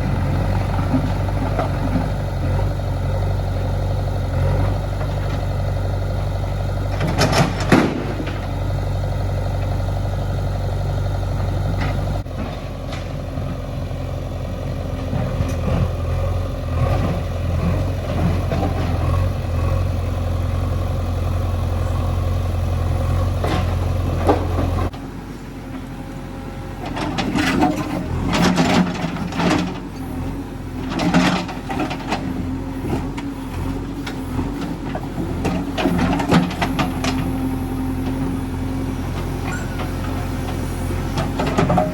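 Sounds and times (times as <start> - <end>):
heavy diesel engine running: 0.0 - 41.9.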